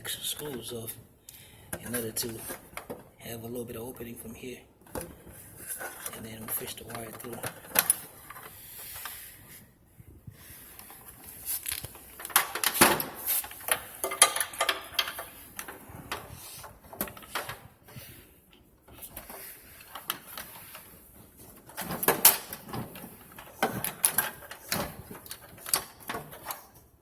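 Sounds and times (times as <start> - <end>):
cable handling clicks and rustles: 0.0 - 3.4, 4.8 - 27.0.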